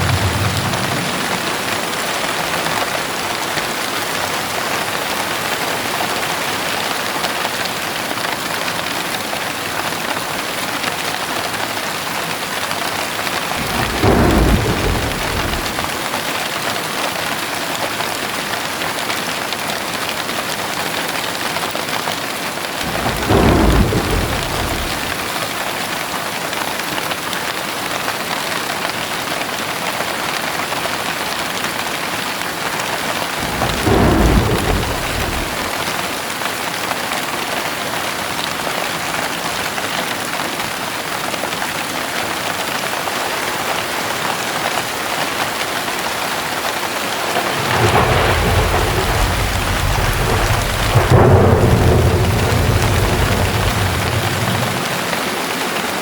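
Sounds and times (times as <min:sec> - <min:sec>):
thunder rumbling: 0:00.0 - 0:03.8, 0:13.2 - 0:16.3, 0:22.8 - 0:25.5, 0:33.2 - 0:36.2, 0:47.3 - 0:56.0
heavy rain: 0:00.0 - 0:56.0.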